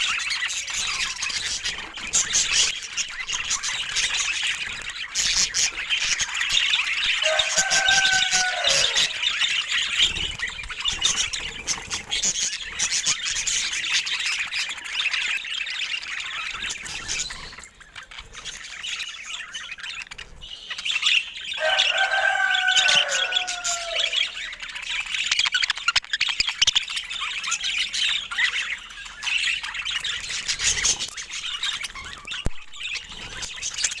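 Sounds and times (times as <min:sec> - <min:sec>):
budgerigars chattering and chirping: 0:00.0 - 0:34.0
bird call falling in pitch: 0:07.2 - 0:09.2, 0:21.6 - 0:24.1.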